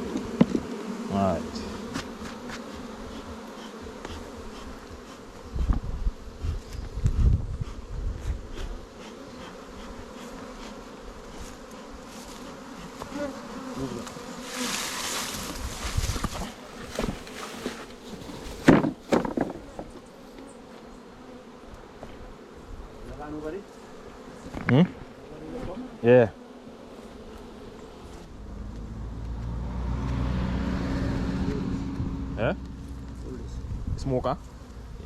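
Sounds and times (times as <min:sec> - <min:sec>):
honey bees buzzing: 0:00.0 - 0:35.0
low bumps and knocks: 0:18.6 - 0:20.0.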